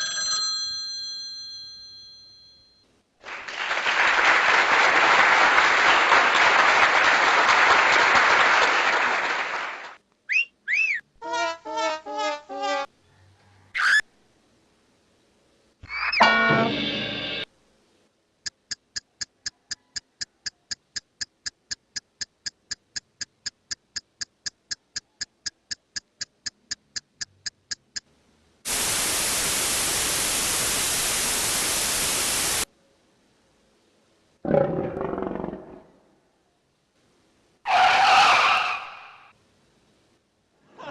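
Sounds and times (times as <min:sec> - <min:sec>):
sharp ringing ticks: 0:18.4 - 0:28.1
white noise burst: 0:28.7 - 0:32.7.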